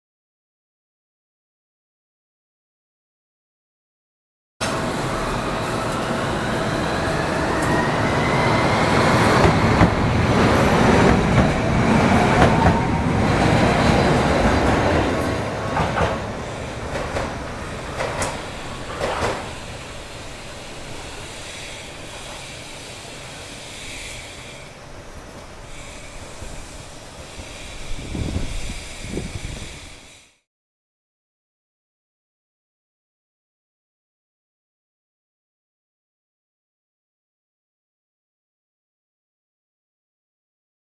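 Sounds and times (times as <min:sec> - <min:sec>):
train running with motor whine: 0:04.6 - 0:30.4
wheels clicking over rail joints: 0:15.7 - 0:19.8.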